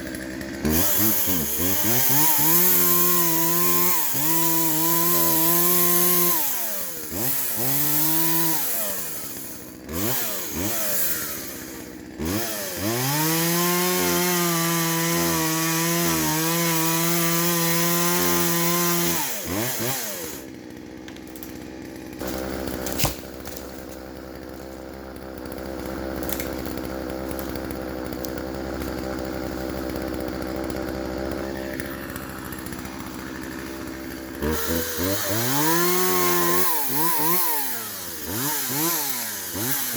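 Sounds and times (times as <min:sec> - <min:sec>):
chainsaw revving and cutting wood: 0:00.0 - 0:39.9
sharp crack: 0:22.2 - 0:24.0, 0:26.2 - 0:27.6.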